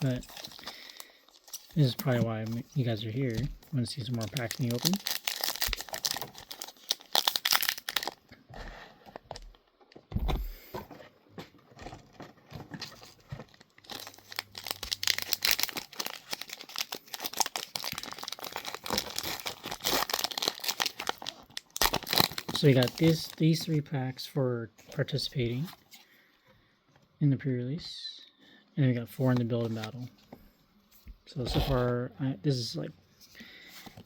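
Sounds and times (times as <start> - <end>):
foil wrappers tearing and crinkling: 0.0 - 8.2, 12.8 - 23.6
dull thump: 10.1 - 10.6.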